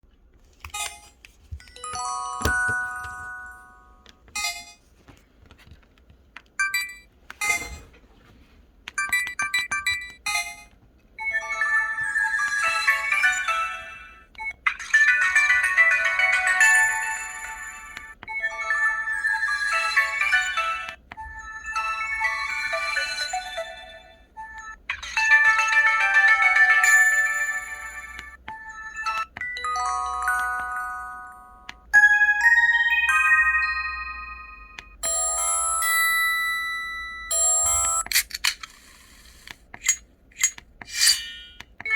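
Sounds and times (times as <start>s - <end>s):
phone melody: 0.8s - 4.9s, 9.0s - 38.2s
phone electronic jingle: 25.4s - 38.1s.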